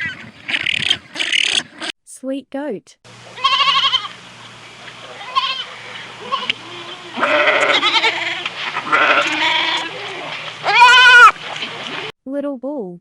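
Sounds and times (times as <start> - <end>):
goats bleating: 3.3 - 4.2, 5.0 - 11.4.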